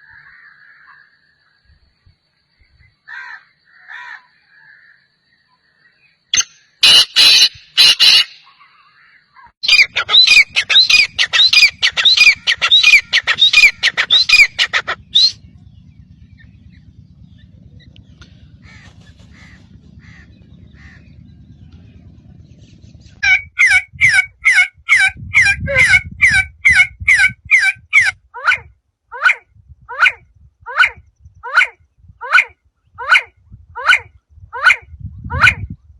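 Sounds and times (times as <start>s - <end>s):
bird harsh repeated calls: 6.4s - 15.6s, 18.1s - 21.2s.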